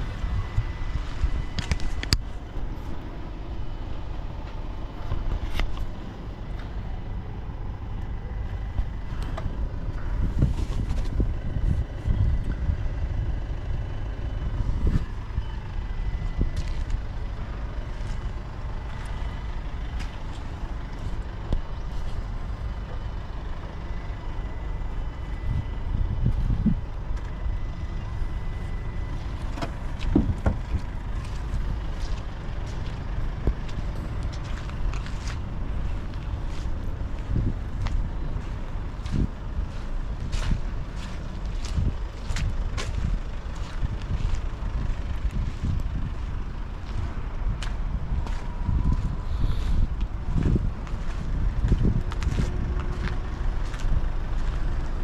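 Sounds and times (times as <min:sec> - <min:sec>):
vehicle engine rumble: 0:00.0 - 0:55.0.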